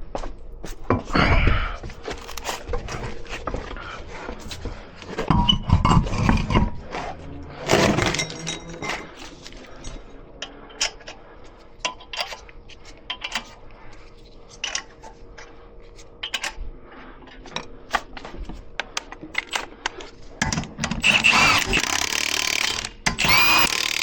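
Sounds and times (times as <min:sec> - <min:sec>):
metal tools clinking: 0:07.6 - 0:10.1.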